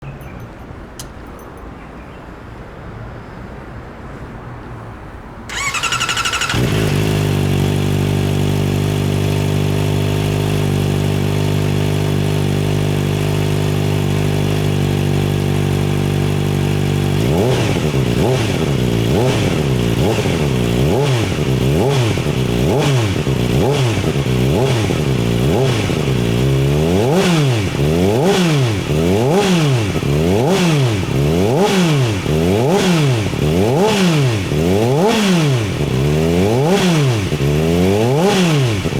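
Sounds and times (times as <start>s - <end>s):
motorcycle starter cranking: 5.5s - 11.9s
motorcycle engine idling: 5.5s - 38.9s
motorcycle engine revving: 5.5s - 38.9s.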